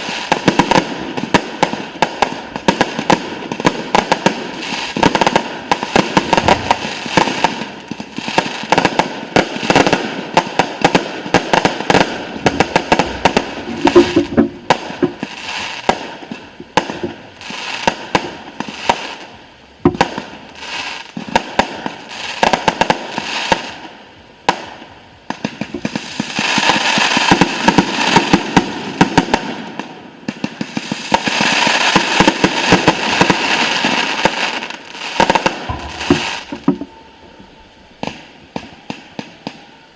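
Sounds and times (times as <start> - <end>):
dense firework crackling: 0.0 - 39.9
firework bursts and bangs: 0.0 - 39.9.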